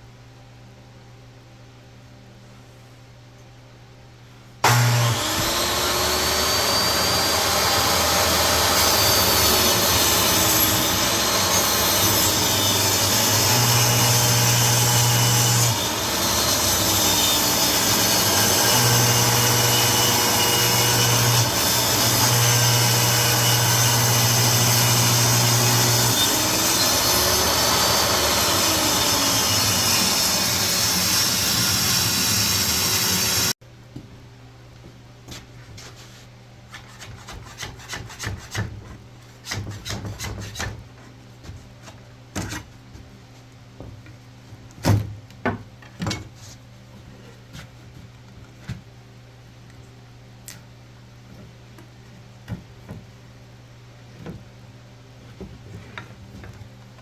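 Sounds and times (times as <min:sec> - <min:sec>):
table saw ripping wood: 0:04.6 - 0:33.6.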